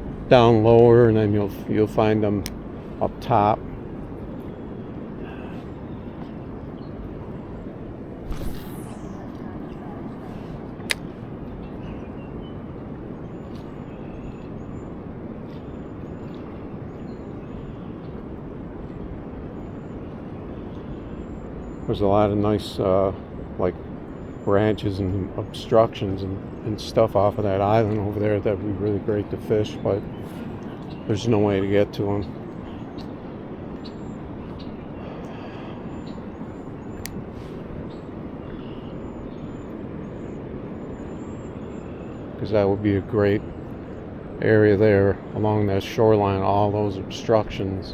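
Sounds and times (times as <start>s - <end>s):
low outdoor rushing noise: 0.0s - 47.9s
sharp click: 8.3s - 9.4s, 37.0s - 37.2s
faint high chirps: 8.3s - 10.6s.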